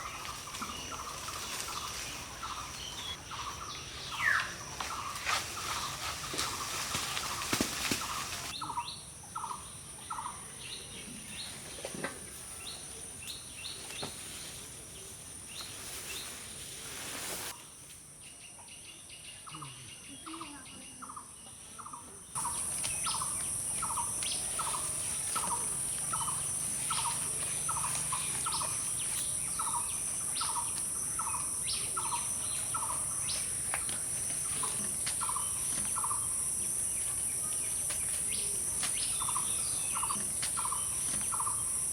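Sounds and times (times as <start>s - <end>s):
high-pitched insect drone: 22.4s - 41.9s.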